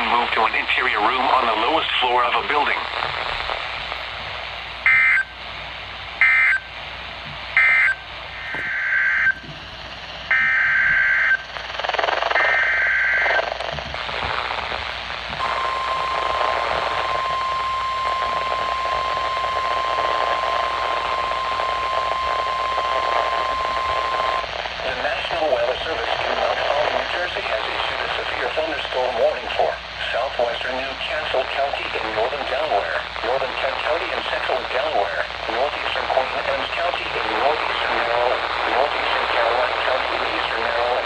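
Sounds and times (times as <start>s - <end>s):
radio static hiss: 0.0s - 41.0s
steady warning alarm tone: 4.8s - 5.4s, 6.2s - 6.7s, 7.6s - 9.4s, 10.3s - 11.5s, 12.4s - 13.4s, 15.4s - 24.5s.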